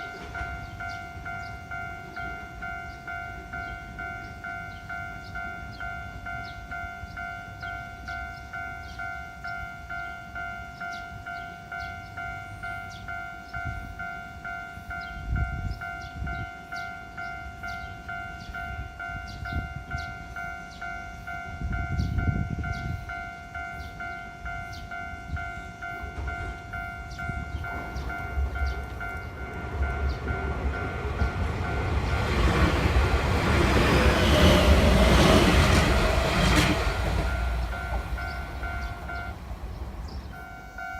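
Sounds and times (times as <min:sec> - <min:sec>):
railroad crossing warning bell: 0:00.0 - 0:40.9.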